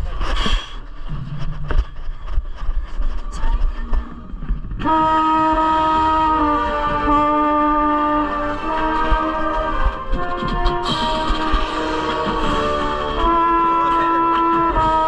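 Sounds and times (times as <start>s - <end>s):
brass section holding a chord: 4.8s - 15.0s
scattered taps and clicks: 9.1s - 12.6s.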